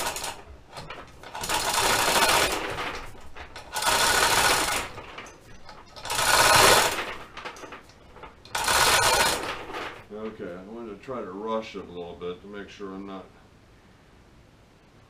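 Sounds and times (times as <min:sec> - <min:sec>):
hoist chain rattling: 0:00.0 - 0:10.2.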